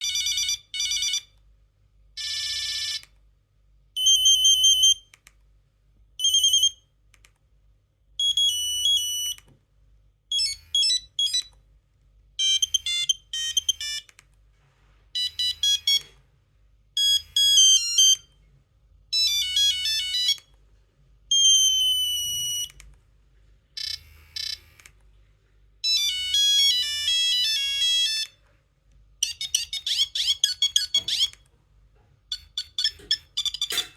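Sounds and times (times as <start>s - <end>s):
monophonic phone ringtones: 0.0s - 1.3s, 2.2s - 3.0s, 10.3s - 11.5s, 12.4s - 14.1s, 15.2s - 16.1s, 17.0s - 18.3s, 19.1s - 20.5s, 23.8s - 24.8s, 25.8s - 28.4s, 29.2s - 31.4s, 32.3s - 33.9s.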